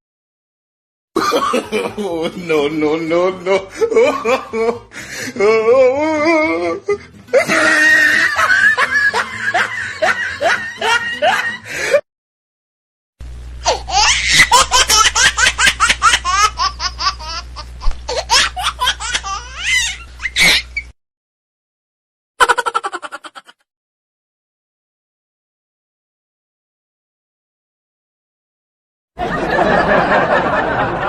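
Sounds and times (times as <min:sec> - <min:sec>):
person laughing: 0:01.2 - 0:12.0, 0:13.6 - 0:20.8, 0:22.4 - 0:23.6
high-pitched rapid laughter: 0:07.3 - 0:11.7, 0:13.6 - 0:20.9, 0:22.4 - 0:23.6
low steady hum: 0:13.2 - 0:20.9.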